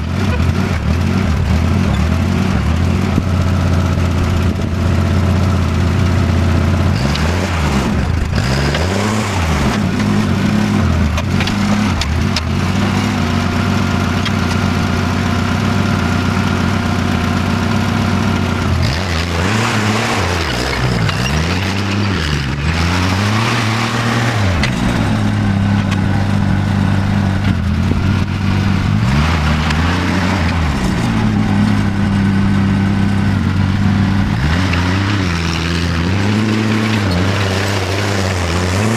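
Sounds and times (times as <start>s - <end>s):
tractor engine running: 0.0s - 38.9s
metal clatter: 16.6s - 38.9s.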